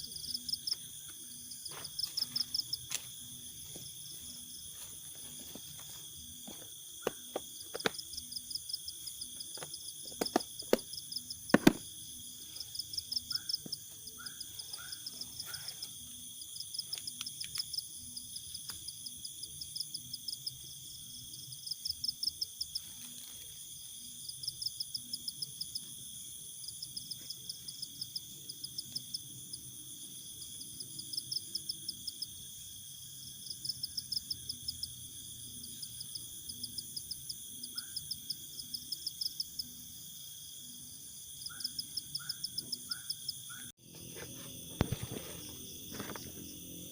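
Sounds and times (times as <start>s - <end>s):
crickets shrilling: 0.0s - 46.9s
sharp clicks and knocks: 9.6s - 10.9s, 11.5s - 11.8s.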